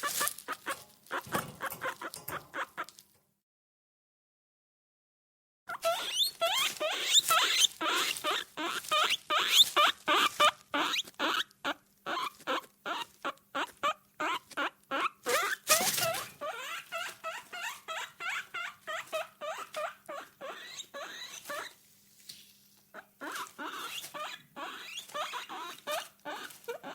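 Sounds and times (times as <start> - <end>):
guinea pig squeaking: 0.0 - 3.0, 5.7 - 21.8, 22.9 - 26.9.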